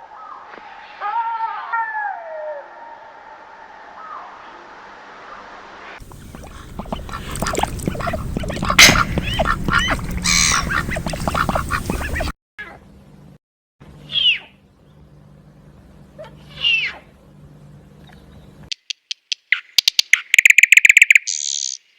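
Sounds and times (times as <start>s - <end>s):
animal calls: 6.0s - 12.3s
loud descending animal calls: 6.0s - 12.3s.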